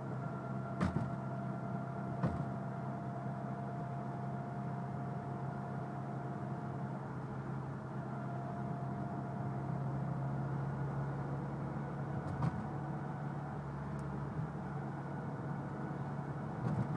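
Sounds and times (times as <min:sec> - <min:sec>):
car drivetrain hum with whine: 0:00.0 - 0:16.9
brief knock: 0:00.8 - 0:01.2, 0:02.2 - 0:02.6.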